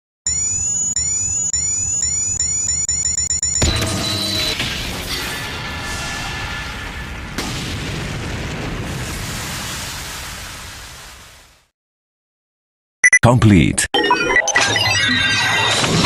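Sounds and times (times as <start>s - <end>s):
ringing electronic tones: 0.3s - 4.6s
synthesized boom and explosion: 3.6s - 11.7s.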